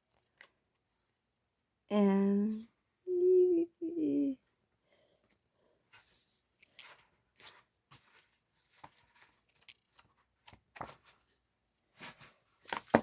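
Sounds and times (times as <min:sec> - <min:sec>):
cards rustling and clicking: 0:06.6 - 0:11.2.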